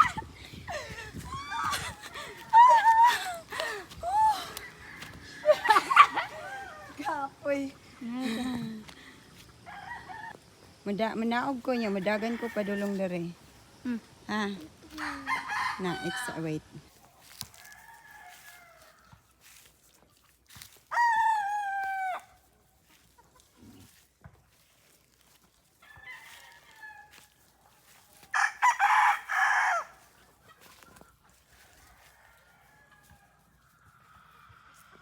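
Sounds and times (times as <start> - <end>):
rooster crowing: 0.0 - 7.0, 9.6 - 10.4, 11.9 - 13.3, 14.9 - 16.6, 17.5 - 19.2, 25.8 - 27.4, 28.3 - 30.1, 31.6 - 35.0
distant rooster calls: 1.3 - 7.0, 9.6 - 10.5, 11.8 - 13.4, 14.9 - 16.6, 17.5 - 19.2, 25.8 - 27.4, 28.3 - 30.1.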